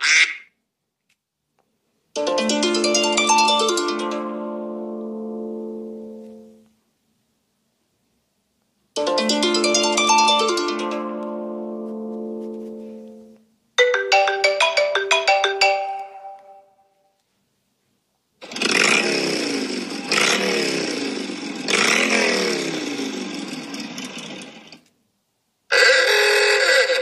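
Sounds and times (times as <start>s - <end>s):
bright plucked notes: 2.2s - 6.6s, 9.0s - 16.8s
phone ringtones: 9.0s - 16.8s, 25.7s - 27.0s.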